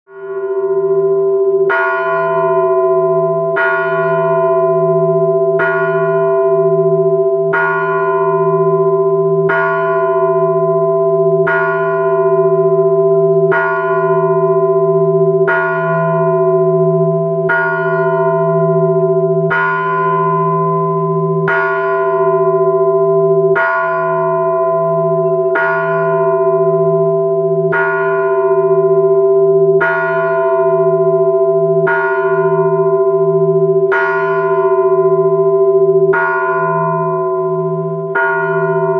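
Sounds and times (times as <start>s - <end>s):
church bell ringing: 0.1s - 38.9s
deep bell hum: 0.1s - 38.9s.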